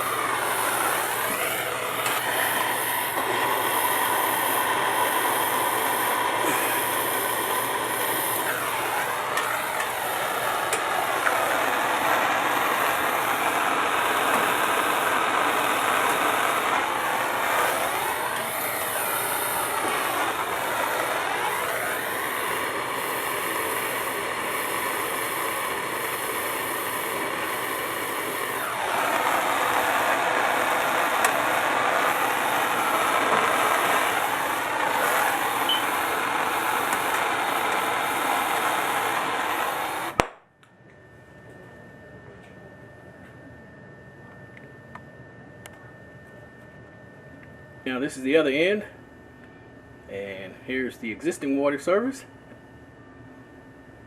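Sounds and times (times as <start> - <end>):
gas torch flame: 0.0 - 40.4.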